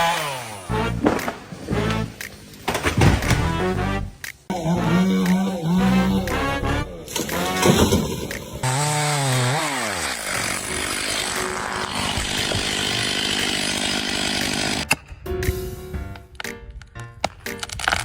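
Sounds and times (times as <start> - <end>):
chainsaw cutting wood: 0.0 - 2.1, 4.5 - 14.9
music: 0.6 - 7.9, 14.8 - 18.0.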